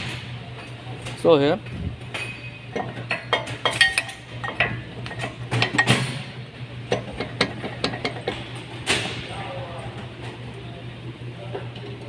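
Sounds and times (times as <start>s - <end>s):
steady low hum: 0.0s - 12.0s.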